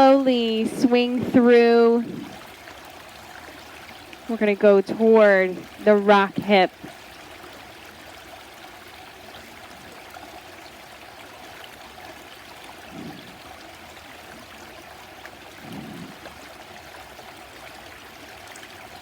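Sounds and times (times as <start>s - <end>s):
soft low sounds: 0.0s - 2.6s, 12.8s - 13.8s
stream running over rocks: 0.0s - 19.0s.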